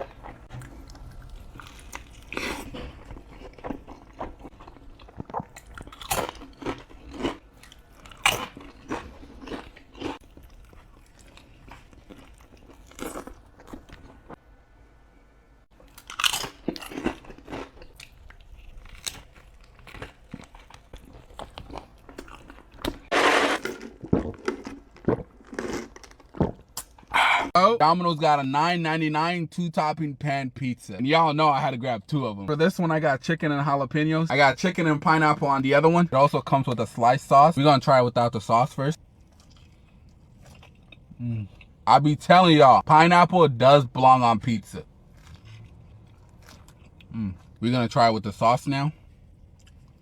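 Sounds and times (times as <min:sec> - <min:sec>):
crunchy bites and chewing: 0:00.0 - 0:14.4, 0:15.8 - 0:27.4, 0:39.0 - 0:41.8, 0:44.8 - 0:47.6.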